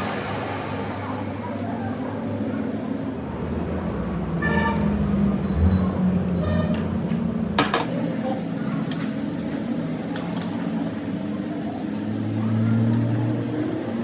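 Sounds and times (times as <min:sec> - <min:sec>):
steady machine hum: 0:07.8 - 0:14.0
metal tools clinking: 0:10.1 - 0:10.8, 0:12.6 - 0:13.2.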